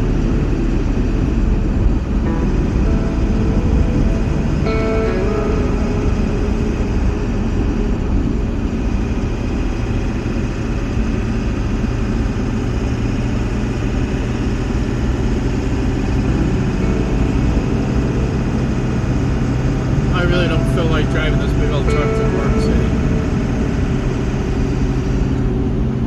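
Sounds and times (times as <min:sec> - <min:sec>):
engine drone inside truck cab: 0:00.0 - 0:26.0.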